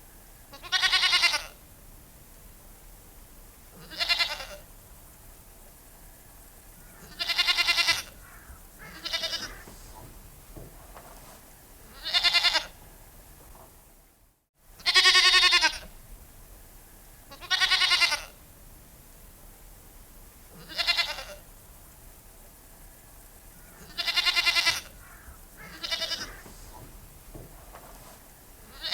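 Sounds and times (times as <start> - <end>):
goat bleating: 0.5 - 1.6, 3.8 - 4.6, 7.0 - 10.8, 11.8 - 12.8, 14.8 - 15.9, 17.3 - 18.4, 20.6 - 21.4, 23.8 - 28.9.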